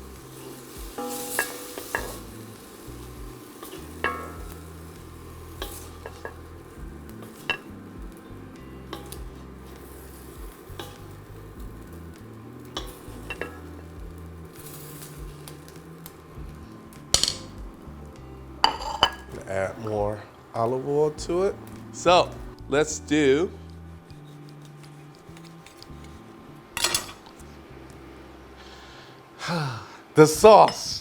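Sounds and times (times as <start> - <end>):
utensil scraping a pan: 0.0 - 16.3, 18.6 - 20.0
food sizzling in a wok: 0.0 - 19.9, 25.2 - 29.3
utensil clatter: 0.3 - 8.0, 8.8 - 14.0, 17.1 - 17.6.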